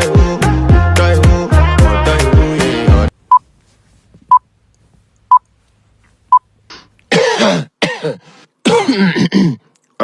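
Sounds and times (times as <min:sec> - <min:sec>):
person coughing loudly: 0:07.1 - 0:09.7.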